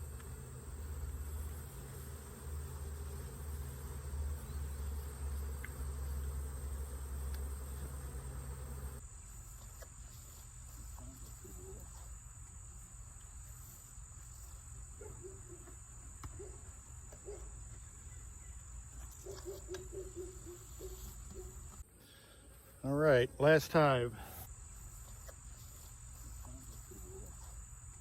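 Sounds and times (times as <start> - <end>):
bees buzzing past: 0.0 - 9.0
crickets trilling: 0.0 - 21.8.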